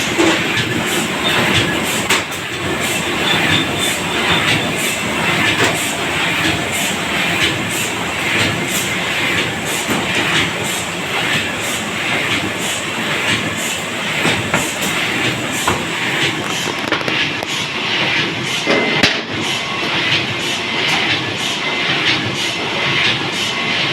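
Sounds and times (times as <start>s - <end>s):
sheets clacking through machine: 0.0s - 18.2s
laminating machine running: 0.0s - 23.9s.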